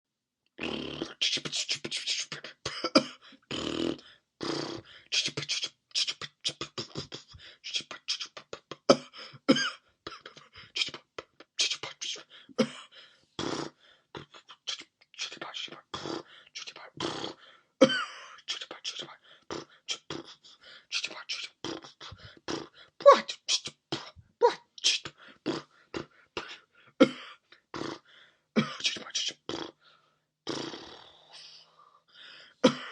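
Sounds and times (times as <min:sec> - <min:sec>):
person imitating sputtering motor: 0:03.5 - 0:09.1, 0:19.0 - 0:26.6.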